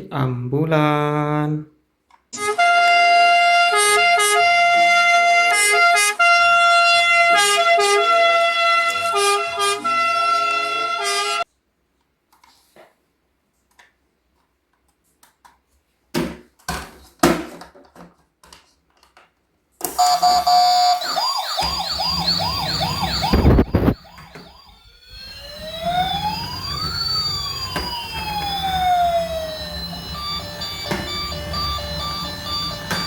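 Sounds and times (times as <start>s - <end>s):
toy electronic siren: 20.0s - 33.0s.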